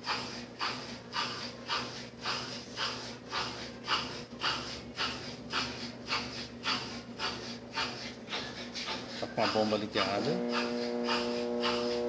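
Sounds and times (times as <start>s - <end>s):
washing machine motor growling: 6.4s - 12.0s
drain pump humming: 9.2s - 12.0s.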